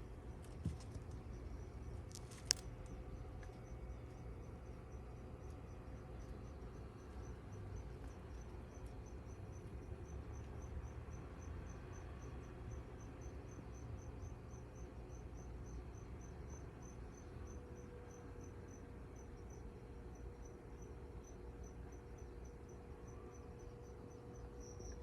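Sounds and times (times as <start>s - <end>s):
cricket chirping: 0.0s - 25.0s
low steady hum: 0.0s - 25.0s.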